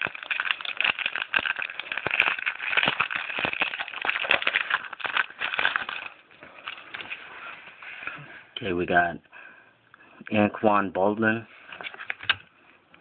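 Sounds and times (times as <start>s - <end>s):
wrapper crinkling and tearing: 0.0s - 7.2s, 11.8s - 12.4s.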